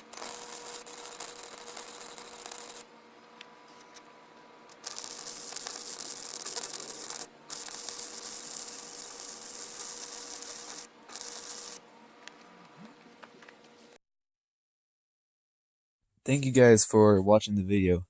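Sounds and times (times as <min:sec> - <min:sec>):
harsh hissing rasping work noise: 0:00.0 - 0:02.9, 0:04.7 - 0:11.8.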